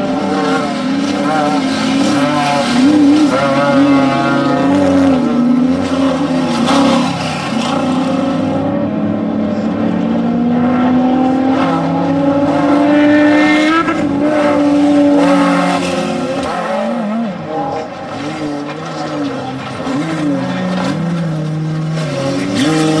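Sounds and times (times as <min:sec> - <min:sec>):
off-road vehicle engine revving: 0:00.0 - 0:23.0.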